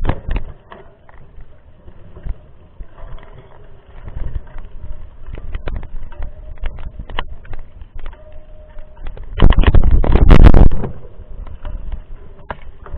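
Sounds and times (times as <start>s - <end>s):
bike knocks and rattles: 0.0s - 12.9s
wind rumble on microphone: 0.0s - 12.9s.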